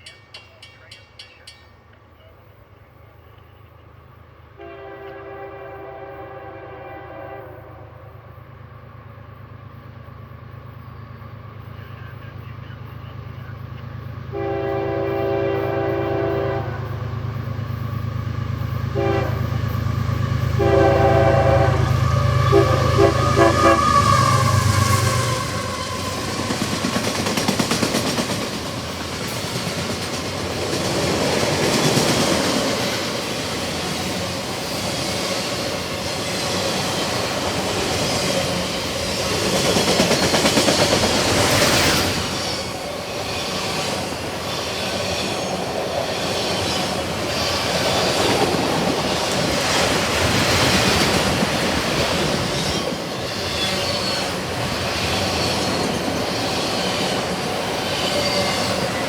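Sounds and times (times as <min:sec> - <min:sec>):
train wheels clacking on rail: 0:00.0 - 0:02.3, 0:13.4 - 0:59.0
wheel squeal: 0:52.4 - 0:59.0.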